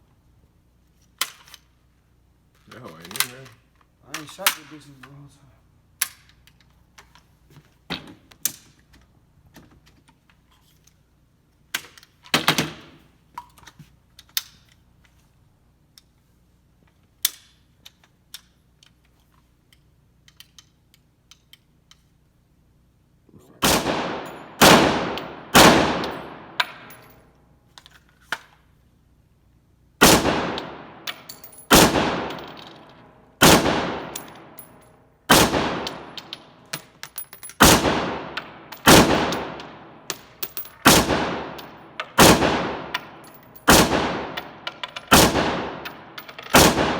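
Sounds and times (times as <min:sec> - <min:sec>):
loud gunshots with echo: 0:23.6 - 0:26.9, 0:30.0 - 0:31.0, 0:31.7 - 0:32.5, 0:33.4 - 0:34.2, 0:42.2 - 0:43.0, 0:43.7 - 0:44.4, 0:45.1 - 0:45.8, 0:46.6 - 0:46.9
faint gunshots: 0:46.6 - 0:46.9.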